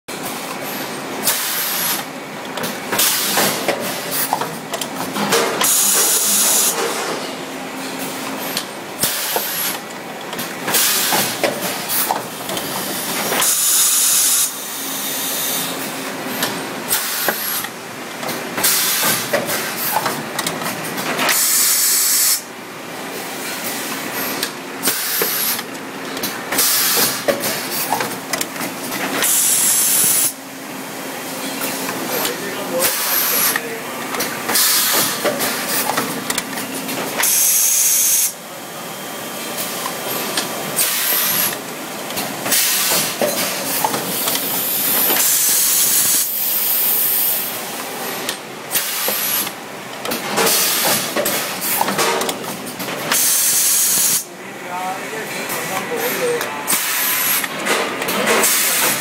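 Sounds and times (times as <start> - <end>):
mechanical clatter and clicks: 1.3 - 6.2, 24.4 - 29.4
steady machine hum: 14.4 - 59.0.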